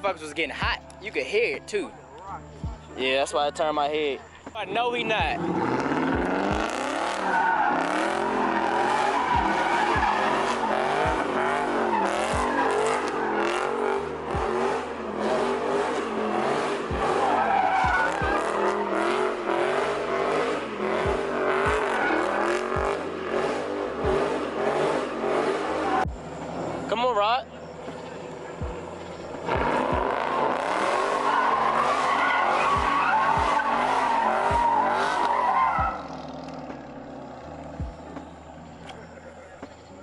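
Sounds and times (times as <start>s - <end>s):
car engine revving: 0.0s - 40.0s
tyres squealing: 2.4s - 40.0s.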